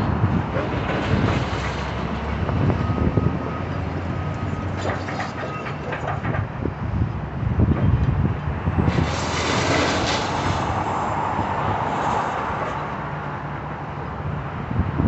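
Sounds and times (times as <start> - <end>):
demolition machinery rumbling: 0.0 - 11.9.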